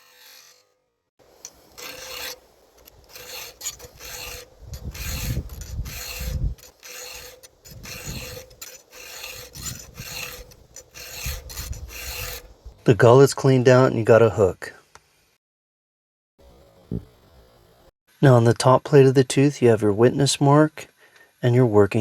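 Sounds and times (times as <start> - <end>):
file rasping on chainsaw chain: 0.0 - 0.7, 1.4 - 12.5.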